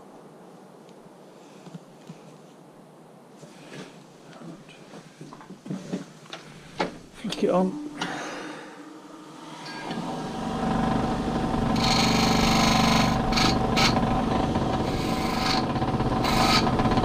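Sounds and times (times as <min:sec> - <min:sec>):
rasping grinding of metal cable: 0:07.9 - 0:17.0
electric grinder humming: 0:08.9 - 0:17.0.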